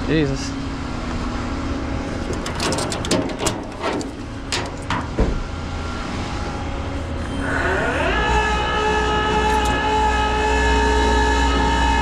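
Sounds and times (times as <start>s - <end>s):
truck engine running: 0.0s - 12.0s
sharp metallic clanks: 2.3s - 5.4s.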